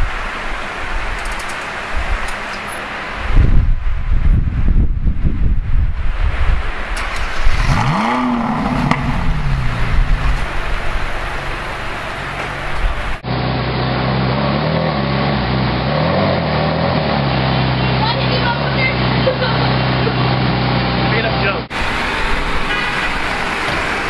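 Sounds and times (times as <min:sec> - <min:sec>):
car engine revving: 0:06.7 - 0:24.0
car engine idling: 0:06.9 - 0:15.9.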